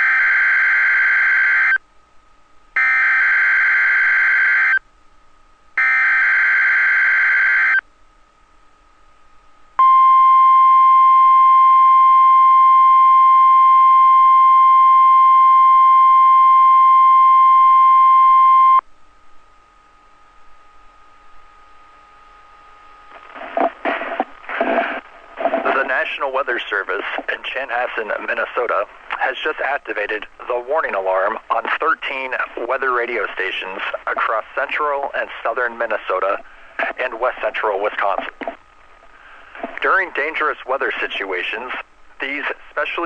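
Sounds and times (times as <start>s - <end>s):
loud steady alarm beep: 2.8s - 4.8s, 5.8s - 7.8s, 9.8s - 18.8s.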